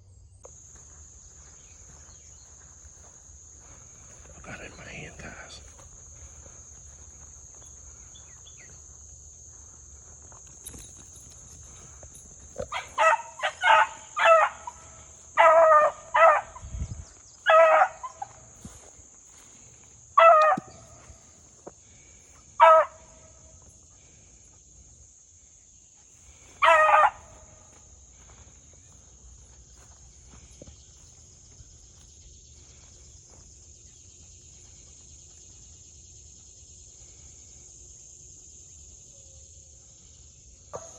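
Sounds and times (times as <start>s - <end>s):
high insect buzz: 0.0s - 40.9s
dog baying: 12.6s - 16.6s, 20.2s - 20.7s.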